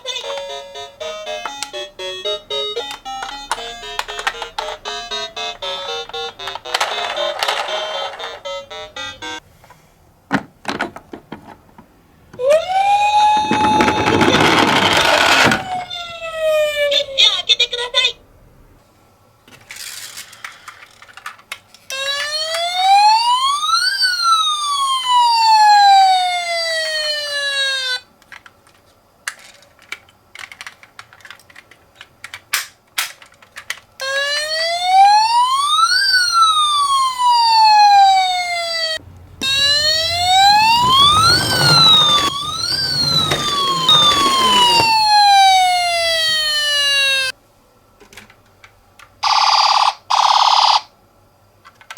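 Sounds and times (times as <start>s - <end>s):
toy siren wailing: 0.0s - 9.4s, 12.4s - 17.3s, 21.9s - 28.1s, 34.0s - 47.3s
rattling rumble: 39.0s - 45.7s.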